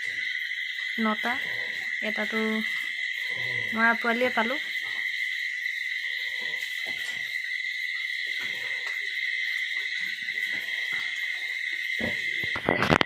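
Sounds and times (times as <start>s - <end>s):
crickets chirring: 0.0s - 13.0s
pigs grunting: 1.0s - 4.1s, 5.9s - 7.5s, 8.2s - 9.2s, 9.8s - 12.6s.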